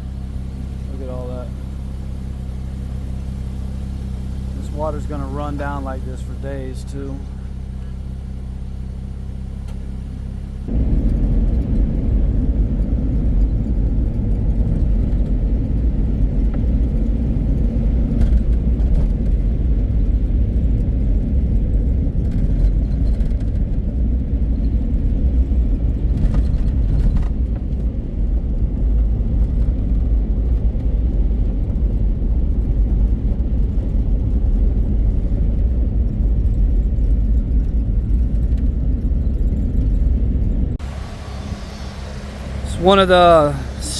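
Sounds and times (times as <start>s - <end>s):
road and wind noise rumble: 0.0s - 43.9s.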